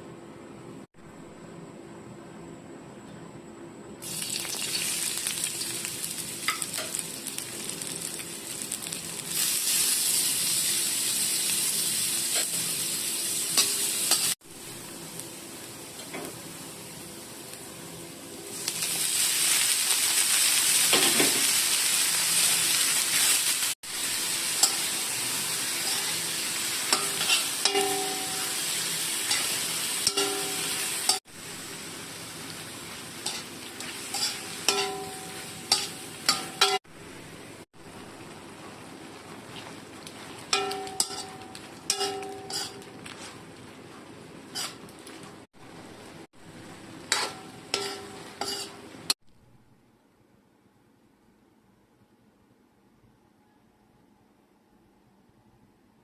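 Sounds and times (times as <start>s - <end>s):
shrimp sizzling in a pan: 4.0s - 17.8s, 18.4s - 37.4s, 39.4s - 43.6s, 44.5s - 45.2s, 45.9s - 49.2s
utensil scraping a pan: 33.2s - 36.8s, 41.0s - 43.4s, 44.5s - 44.8s, 47.1s - 48.8s.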